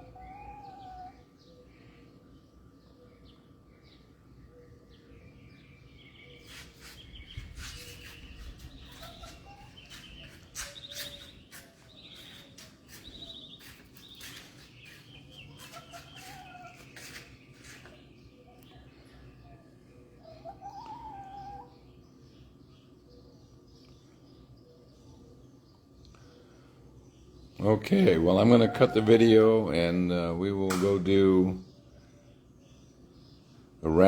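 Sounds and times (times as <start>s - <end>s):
hen calling softly: 0.0s - 1.2s, 7.8s - 11.4s, 12.1s - 17.2s
birds chirping: 0.0s - 34.0s.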